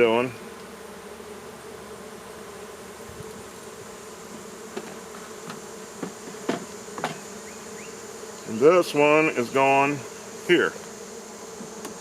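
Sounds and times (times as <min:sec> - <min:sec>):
honeybees buzzing: 0:00.0 - 0:12.0
light knocks: 0:04.7 - 0:07.2.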